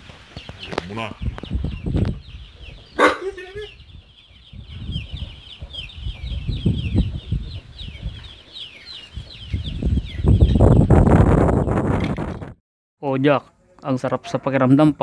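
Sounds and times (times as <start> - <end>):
birds chirping: 0.0 - 11.8.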